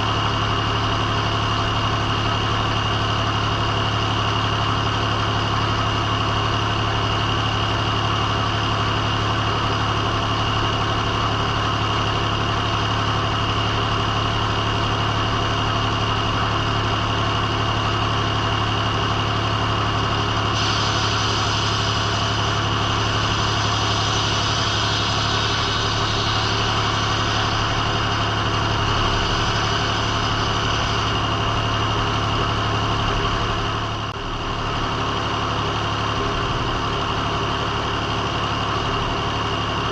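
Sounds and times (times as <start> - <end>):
sawmill engine humming with ringing tone: 0.0 - 39.9
high hiss: 20.6 - 31.1.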